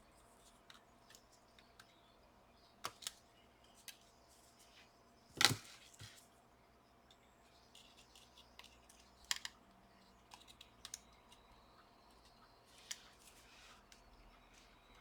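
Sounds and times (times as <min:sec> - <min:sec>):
laptop parts clicking: 0:02.8 - 0:04.1, 0:05.4 - 0:06.2, 0:07.1 - 0:14.1.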